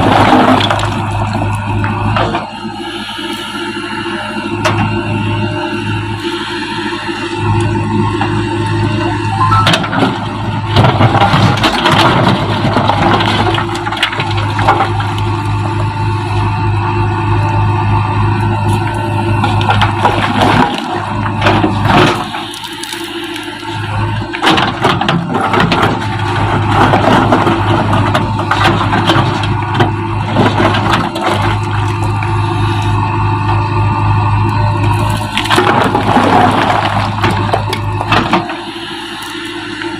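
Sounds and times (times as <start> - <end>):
masonry cracking and crunching: 0.0 - 2.5, 9.8 - 15.9, 18.7 - 33.6, 34.8 - 39.9
diesel engine running under load: 0.0 - 39.9
crunching and cracking: 18.7 - 33.0.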